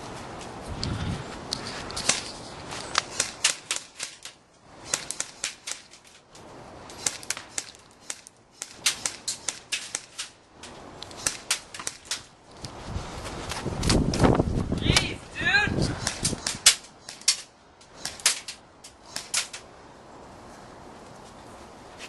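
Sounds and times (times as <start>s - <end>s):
airsoft rifles firing clicking shots: 2.9s - 6.1s, 6.9s - 10.4s, 11.0s - 12.3s, 16.0s - 19.6s.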